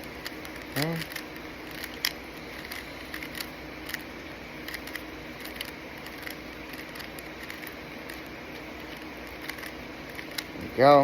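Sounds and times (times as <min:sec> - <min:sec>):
plastic cube clicking: 0:00.2 - 0:04.0.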